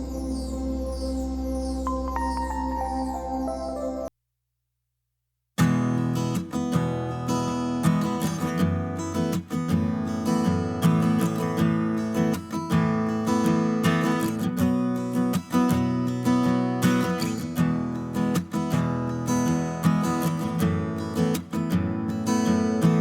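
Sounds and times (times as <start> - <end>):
strummed acoustic guitar music: 5.6 - 23.0.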